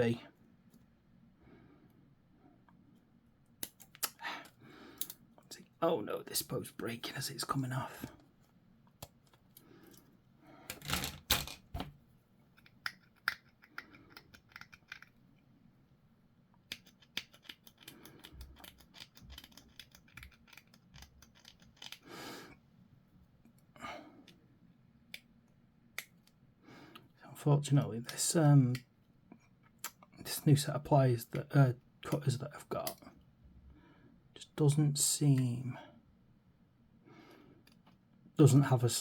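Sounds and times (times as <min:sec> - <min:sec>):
plastic pieces clicking and tapping: 0:12.6 - 0:15.2, 0:16.6 - 0:22.0.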